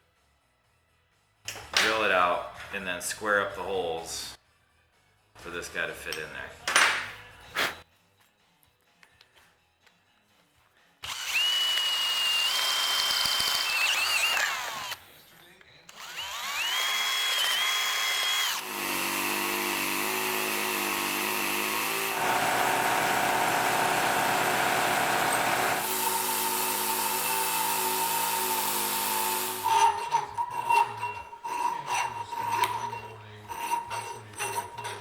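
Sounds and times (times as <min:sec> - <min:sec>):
electric drill boring through metal: 0:11.0 - 0:15.0, 0:15.9 - 0:35.0
sharp scraping strokes: 0:29.1 - 0:35.0.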